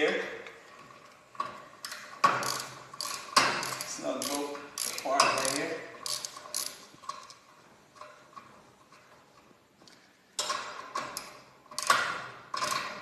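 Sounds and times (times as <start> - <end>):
wrench clinking on metal: 1.8 - 7.4.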